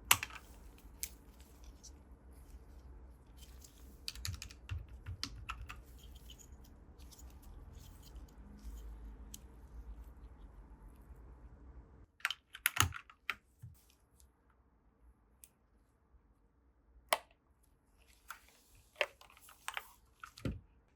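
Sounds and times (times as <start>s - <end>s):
mechanical keyboard keystrokes: 4.1s - 5.8s.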